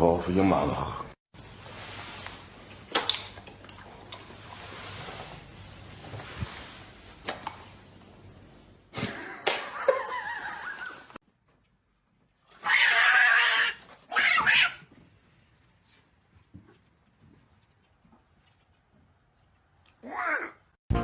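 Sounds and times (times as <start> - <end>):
cat crying: 12.6 - 14.8.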